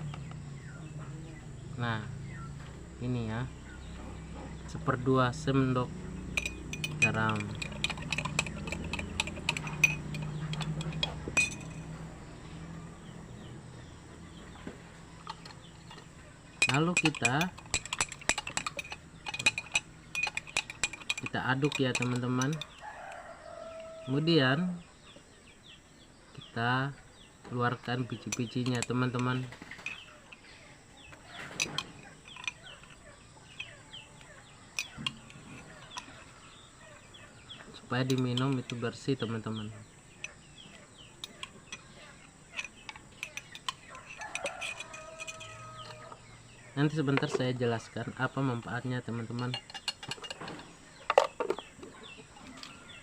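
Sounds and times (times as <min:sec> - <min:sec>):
spoon clinking against glass: 0:06.3 - 0:12.0, 0:16.6 - 0:24.0, 0:31.3 - 0:37.2, 0:40.2 - 0:46.2, 0:49.2 - 0:53.0
chickens clucking and peeping: 0:29.3 - 0:53.0.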